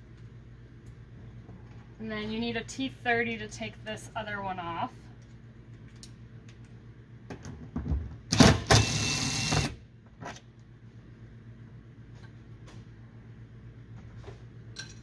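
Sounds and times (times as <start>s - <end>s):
cordless drill motor: 8.4s - 9.8s.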